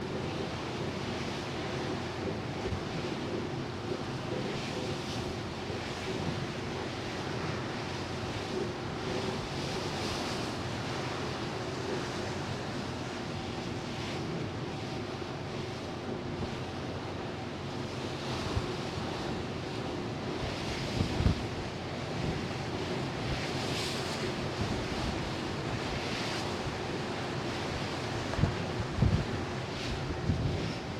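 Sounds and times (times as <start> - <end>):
faint ship hum: 0.0 - 30.9
wind on microphone: 20.4 - 21.6, 27.7 - 30.9.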